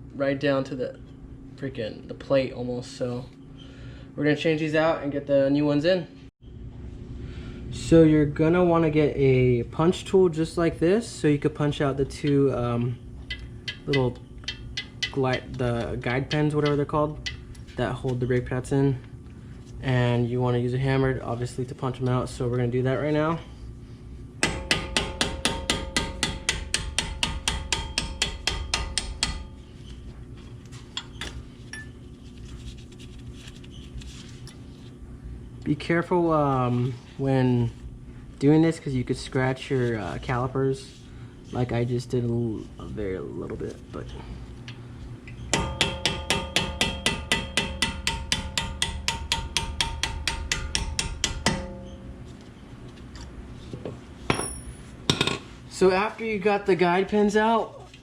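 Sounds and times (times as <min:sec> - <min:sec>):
hammer tapping steel punch: 0:24.4 - 0:29.6, 0:45.5 - 0:52.1.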